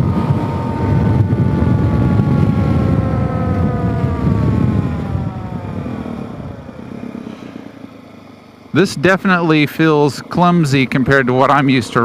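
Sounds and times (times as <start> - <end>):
wind rush: 0.0 - 7.3
whine falling in pitch: 0.0 - 7.4
motorcycle riding at speed: 0.0 - 12.0
road noise: 0.0 - 12.0.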